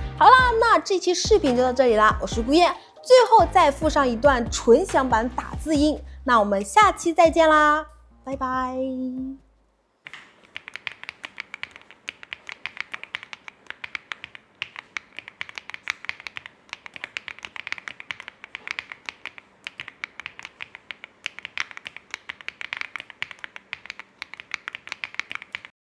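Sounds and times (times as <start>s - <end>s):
typing on mechanical keyboard: 10.1s - 25.8s.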